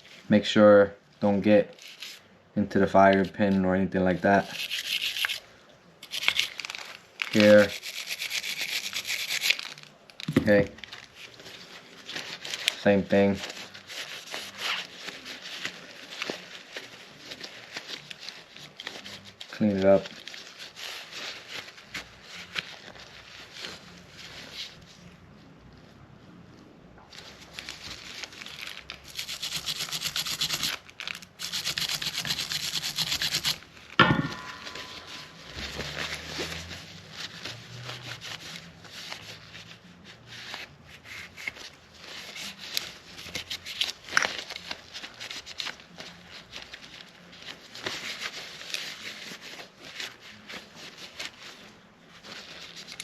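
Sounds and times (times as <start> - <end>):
small brush scrubbing metal parts: 4.3 - 5.4, 7.3 - 9.8, 29.1 - 30.8, 31.4 - 33.6
sharp knock: 34.0 - 35.3.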